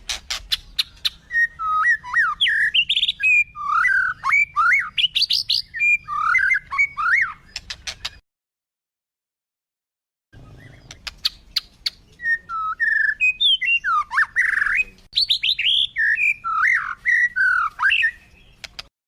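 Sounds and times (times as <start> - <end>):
sharp clicks: 18.6 - 18.9.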